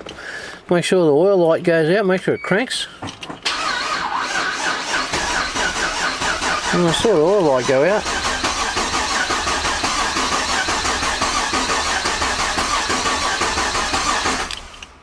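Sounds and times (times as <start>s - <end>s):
starter motor cranking engine: 3.4s - 15.0s.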